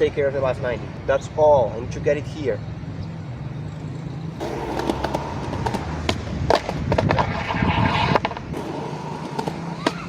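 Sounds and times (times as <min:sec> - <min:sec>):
skateboard wheels rolling on concrete: 0:03.7 - 0:10.0
skateboard clacks: 0:04.4 - 0:10.0.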